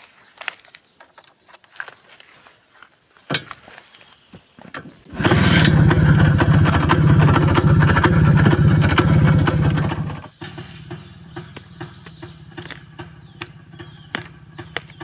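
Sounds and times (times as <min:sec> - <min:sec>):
motorcycle engine idling: 0:05.1 - 0:15.0.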